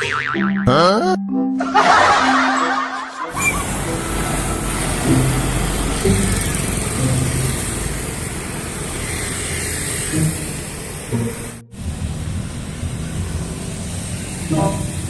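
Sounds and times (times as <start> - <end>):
road traffic rumble: 3.3 - 15.0.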